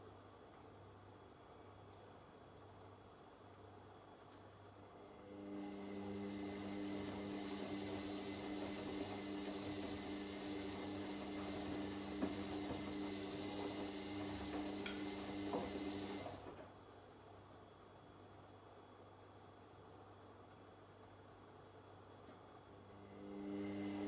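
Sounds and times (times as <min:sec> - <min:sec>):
washing machine drum turning: 0:06.4 - 0:16.6
laundry tumbling: 0:07.2 - 0:16.6.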